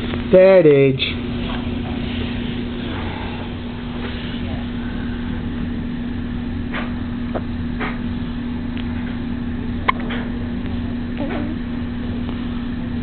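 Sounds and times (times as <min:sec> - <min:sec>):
crib vibration unit humming: 0:00.0 - 0:13.0.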